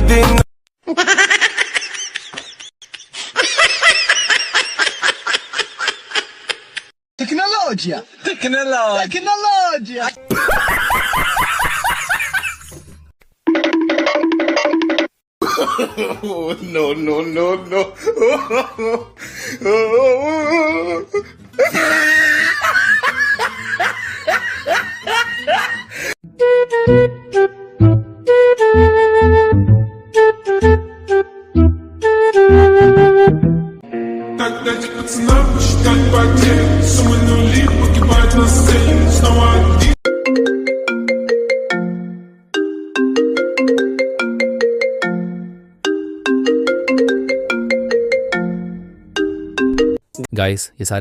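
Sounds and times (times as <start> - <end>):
person laughing: 0.8 - 6.9, 10.3 - 12.8, 15.4 - 16.6, 17.4 - 26.1.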